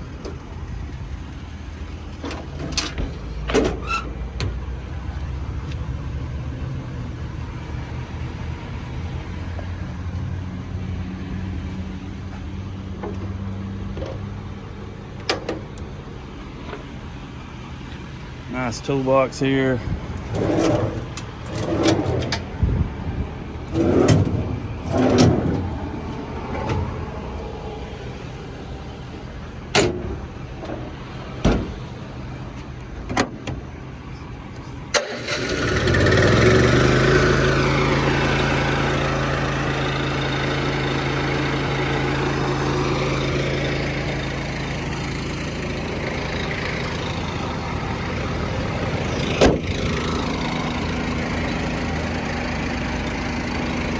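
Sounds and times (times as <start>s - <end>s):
diesel engine starting and idling: 0.0s - 53.9s.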